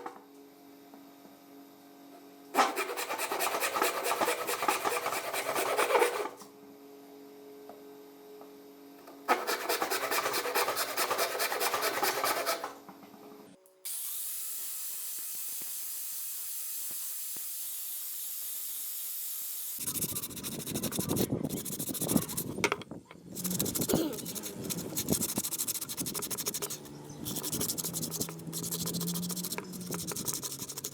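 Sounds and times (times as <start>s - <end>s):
hand rubbing rust off steel: 23.3s - 30.9s.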